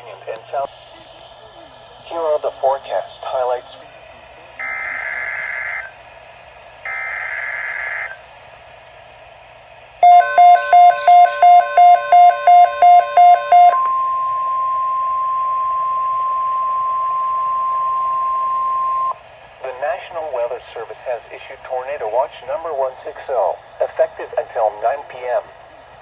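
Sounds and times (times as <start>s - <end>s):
screeching data bursts: 4.6s - 6.0s, 6.8s - 8.2s
steady warning alarm tone: 4.6s - 6.0s, 6.8s - 8.2s, 10.0s - 20.2s
loud beeping: 6.9s - 8.2s, 10.0s - 19.2s.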